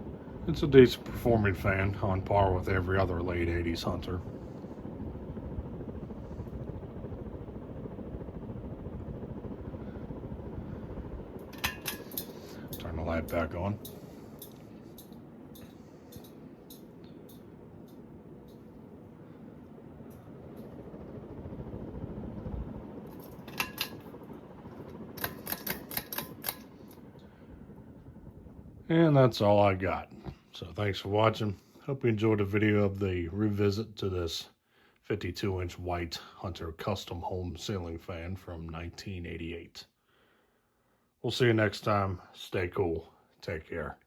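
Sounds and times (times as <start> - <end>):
ceiling fan air rush: 0.0 - 44.0
sharp clicks: 25.2 - 27.0.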